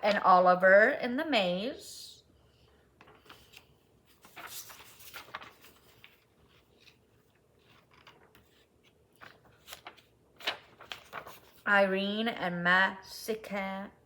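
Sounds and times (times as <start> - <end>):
paper sheets rustling: 3.0 - 11.7.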